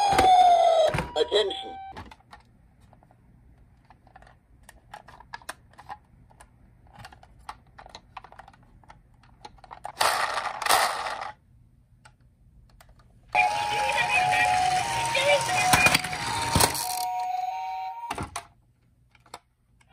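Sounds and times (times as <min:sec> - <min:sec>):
toy vehicles clicking and tapping: 0:13.7 - 0:17.3.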